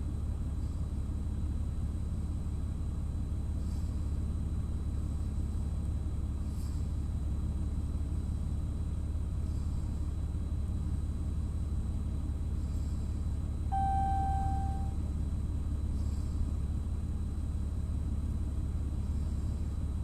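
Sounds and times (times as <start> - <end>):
faint high-pitched whine: 13.7 - 15.0
single beep: 13.7 - 15.0.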